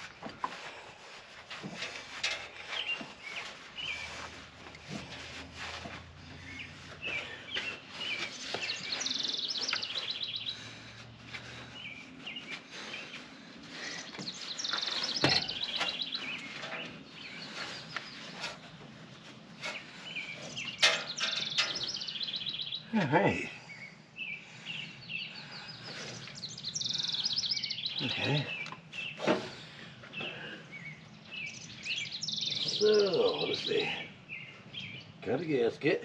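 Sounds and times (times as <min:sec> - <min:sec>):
songbirds chirping: 0:00.0 - 0:36.0
bird trill: 0:14.0 - 0:18.3, 0:20.0 - 0:22.9, 0:30.2 - 0:35.0.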